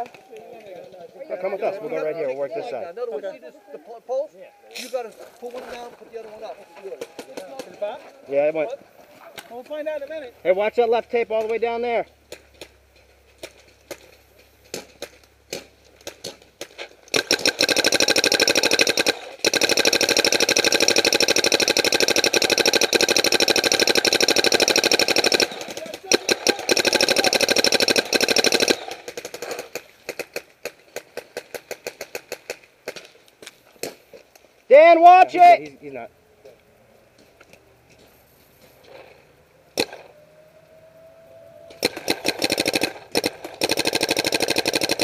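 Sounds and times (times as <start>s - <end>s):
paintball markers firing: 13.4s - 33.2s, 41.7s - 45.0s.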